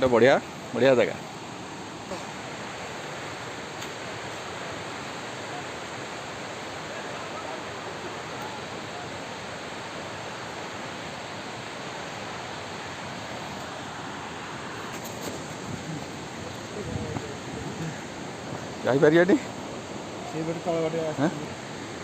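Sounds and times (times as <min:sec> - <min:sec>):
waterfall rushing: 0:00.0 - 0:22.0.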